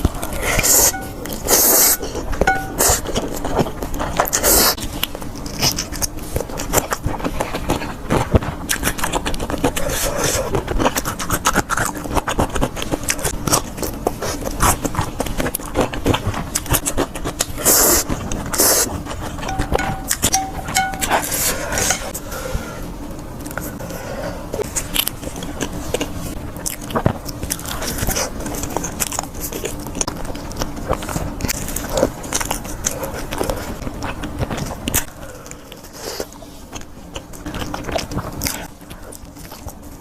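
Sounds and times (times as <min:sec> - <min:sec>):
chewing and mouth smacking: 0:02.8 - 0:19.5, 0:24.7 - 0:40.0.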